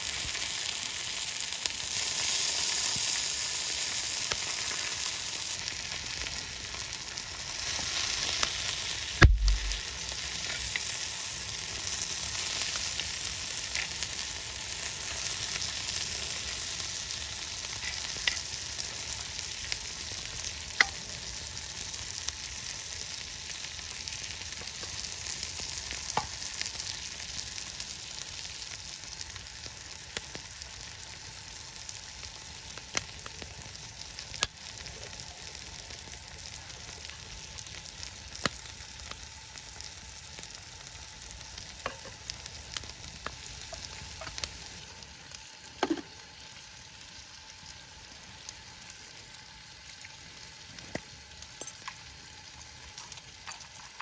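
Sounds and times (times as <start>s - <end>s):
food sizzling in a pan: 0.0s - 54.0s
sharp knock: 9.2s - 9.8s.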